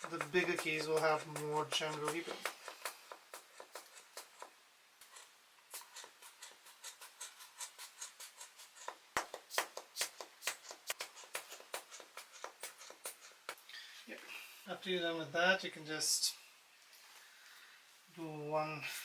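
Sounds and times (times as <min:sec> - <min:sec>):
hand air blower puffing: 0:00.0 - 0:04.5.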